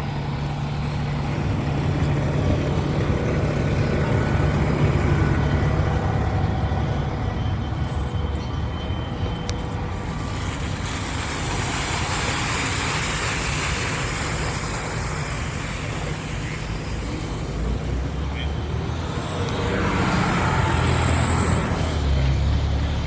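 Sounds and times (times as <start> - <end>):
traffic rumble: 0.0 - 23.0
vehicle passing close by: 13.4 - 23.0.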